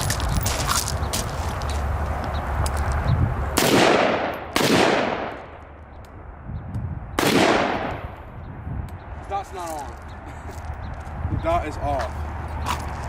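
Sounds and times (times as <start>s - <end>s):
gunshots echoing: 3.6s - 5.6s, 7.2s - 8.2s.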